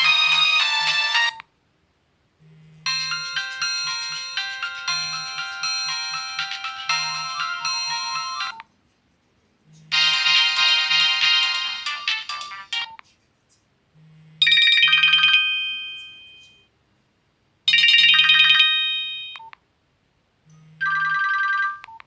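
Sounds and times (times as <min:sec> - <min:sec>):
electronic phone ringtone melodies: 0:00.0 - 0:01.4, 0:02.4 - 0:08.6, 0:09.8 - 0:13.0, 0:14.4 - 0:16.7, 0:17.7 - 0:19.4, 0:20.5 - 0:22.0.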